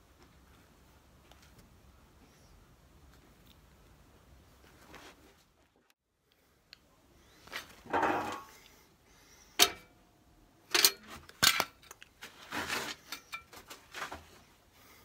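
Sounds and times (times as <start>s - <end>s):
scraping and rustling: 7.4s - 8.6s, 11.0s - 14.6s
metal objects clinking and clattering: 7.9s - 8.6s, 10.7s - 12.0s.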